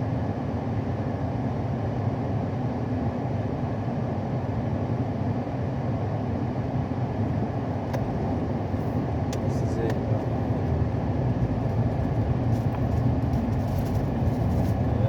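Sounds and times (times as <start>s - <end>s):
low rumbling background noise: 0.0s - 15.0s.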